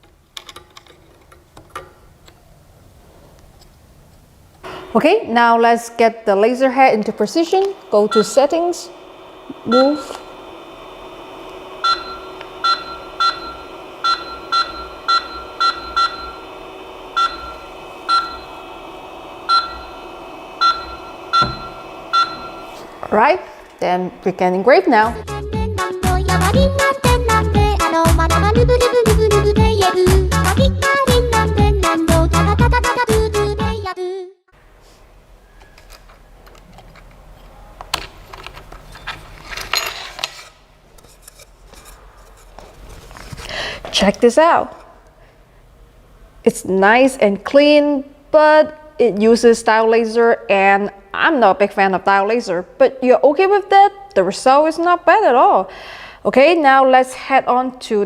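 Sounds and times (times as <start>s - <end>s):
steady hum: 1.6s - 33.8s
control panel beeps: 7.6s - 10.4s, 11.4s - 23.4s.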